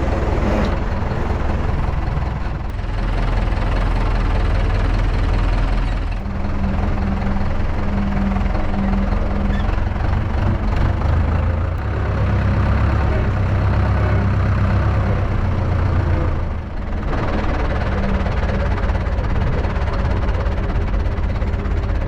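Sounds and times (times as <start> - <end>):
tractor diesel engine running: 0.0 - 22.0.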